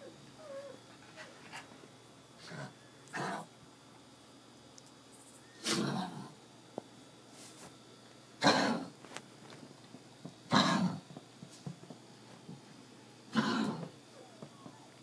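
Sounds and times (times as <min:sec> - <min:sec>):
dog coughing harshly: 0:08.4 - 0:08.9, 0:10.5 - 0:11.0, 0:13.3 - 0:13.9.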